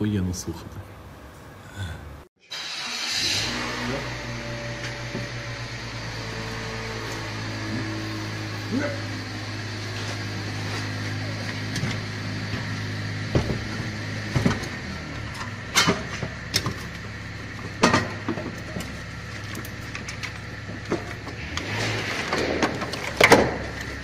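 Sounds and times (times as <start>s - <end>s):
low mechanical hum: 0.0s - 2.3s, 3.2s - 24.0s
sharp knocks and clanks: 11.7s - 24.0s.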